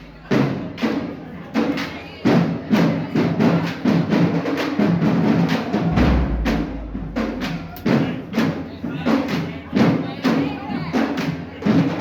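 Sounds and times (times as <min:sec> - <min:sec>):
marching band playing: 0:05.0 - 0:08.7
bass drum boom: 0:05.9 - 0:08.0.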